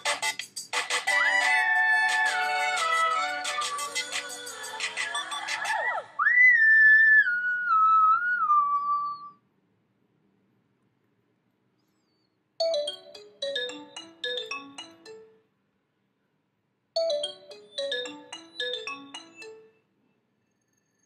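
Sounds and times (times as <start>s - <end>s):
phone ringtone chime melody: 1.1s - 5.7s, 12.6s - 15.5s, 17.0s - 19.9s.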